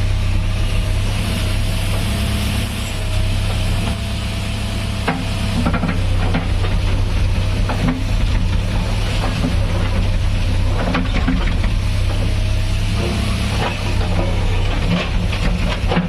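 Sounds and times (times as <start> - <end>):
diesel engine running: 0.0 - 16.0
knocks and crackling clatter: 5.0 - 12.4, 13.0 - 16.0.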